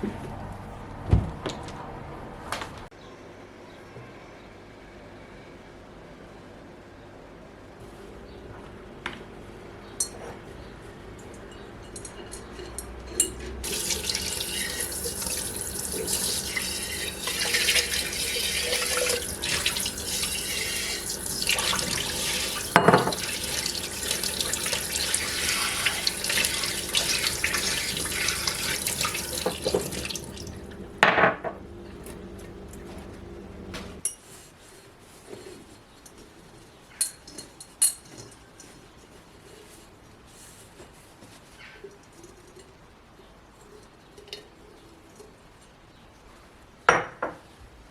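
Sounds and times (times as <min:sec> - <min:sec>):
glass and dishes clinking: 0:09.9 - 0:10.4, 0:11.2 - 0:31.6
tap running into sink: 0:13.6 - 0:33.1.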